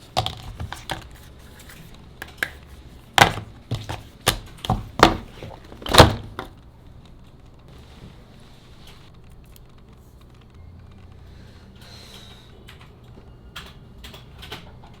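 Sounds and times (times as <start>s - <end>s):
hands handling packaging clicks: 0.1s - 6.5s.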